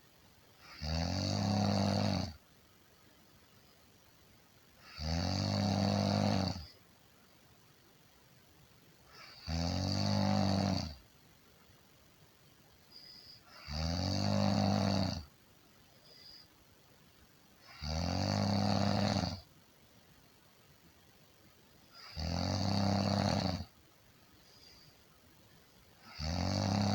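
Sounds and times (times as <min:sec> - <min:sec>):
quiet breathing: 0:00.0 - 0:05.2, 0:06.0 - 0:26.9
person snoring: 0:00.6 - 0:02.4, 0:04.8 - 0:06.7, 0:09.2 - 0:11.0, 0:13.0 - 0:15.3, 0:17.6 - 0:19.4, 0:22.0 - 0:23.7, 0:26.0 - 0:26.9.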